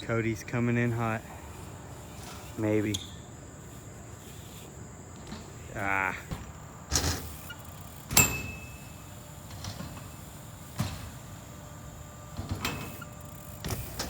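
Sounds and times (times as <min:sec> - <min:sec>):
bike hitting metal ramps: 0:01.0 - 0:14.0.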